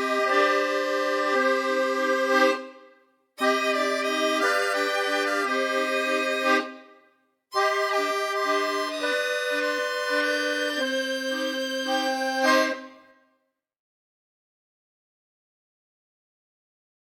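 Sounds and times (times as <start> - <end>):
accordion music: 0.0 - 13.2.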